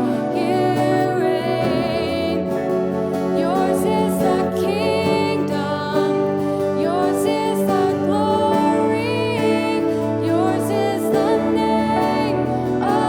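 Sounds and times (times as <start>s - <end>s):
person singing with vibrato: 0.0s - 13.0s
sustained instrumental chords: 0.0s - 13.0s.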